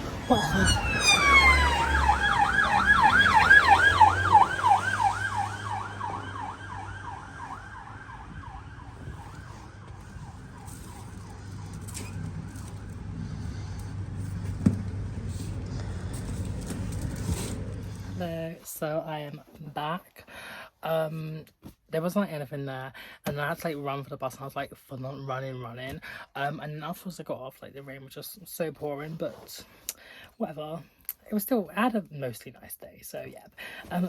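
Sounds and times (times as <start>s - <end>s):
siren yelping: 0.0s - 13.0s
low traffic rumble: 0.0s - 18.4s.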